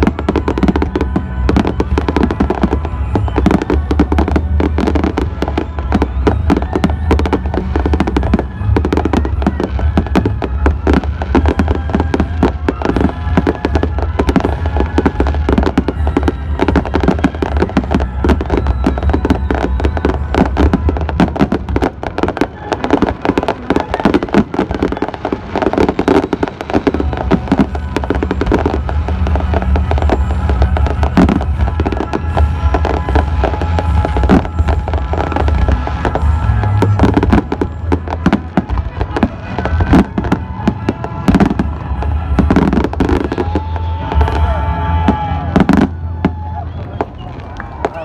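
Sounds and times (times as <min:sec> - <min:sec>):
fireworks bangs and crackles: 0:00.0 - 0:48.0
music playing: 0:00.0 - 0:48.0.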